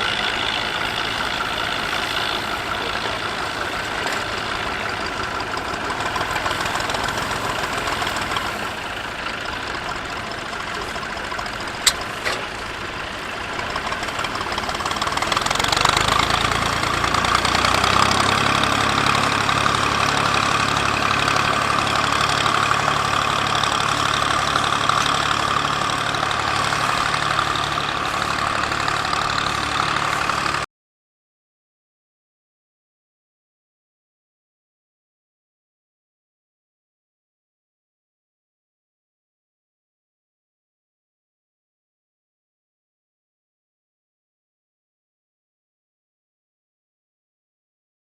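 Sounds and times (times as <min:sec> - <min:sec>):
tractor engine running: 0:00.0 - 0:30.7.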